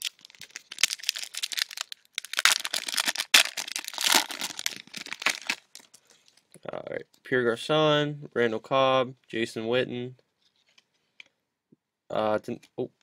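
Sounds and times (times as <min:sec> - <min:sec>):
card pack wrapper tearing: 0:00.0 - 0:05.9.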